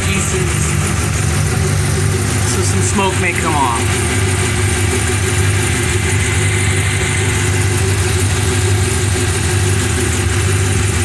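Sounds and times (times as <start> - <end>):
car engine idling: 0.0 - 11.0.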